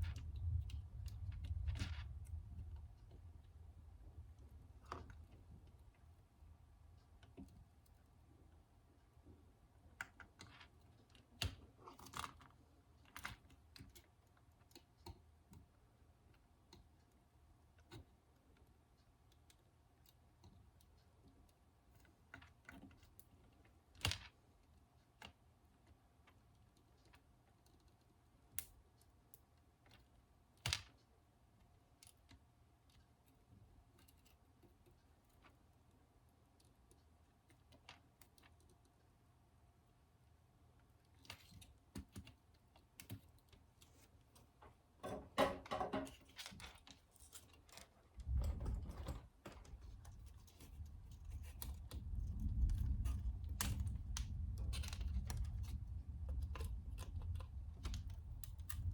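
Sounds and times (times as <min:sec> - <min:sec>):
faint steady hum: 0:00.0 - 0:58.9
small clicks and taps from hands: 0:41.0 - 0:44.7.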